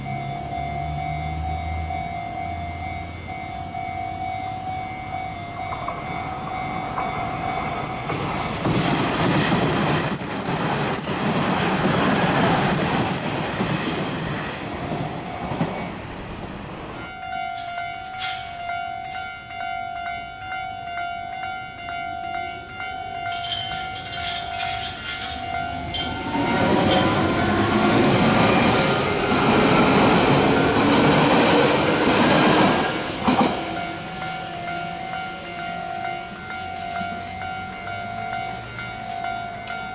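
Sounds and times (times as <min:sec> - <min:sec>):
level crossing bell ringing: 0:00.0 - 0:09.2
train wheels running: 0:00.0 - 0:18.7, 0:23.2 - 0:39.9
rising train whine: 0:00.0 - 0:39.9.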